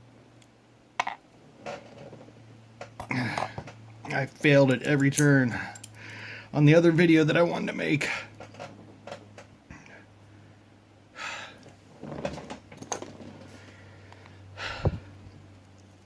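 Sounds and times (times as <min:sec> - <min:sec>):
low electrical hum: 0:00.0 - 0:16.0
breathy exhales: 0:05.5 - 0:06.5, 0:13.5 - 0:15.2.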